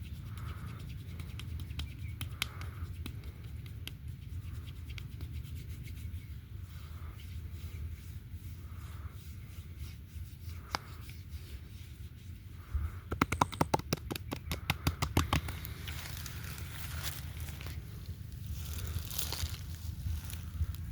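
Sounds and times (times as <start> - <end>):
hands rubbing oiled skin: 0.0 - 19.0
rapid slaps on skin: 0.2 - 5.5, 10.6 - 10.9, 13.0 - 15.8.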